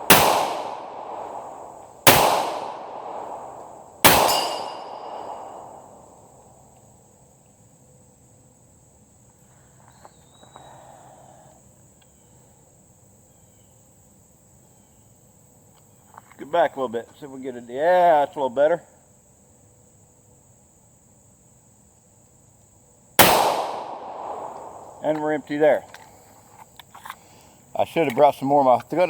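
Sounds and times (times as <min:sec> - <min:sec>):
pistol shots echoing: 0:00.0 - 0:06.2, 0:23.2 - 0:25.8
crickets chirring: 0:00.0 - 0:29.0
metallic ring of steel target: 0:04.0 - 0:05.7.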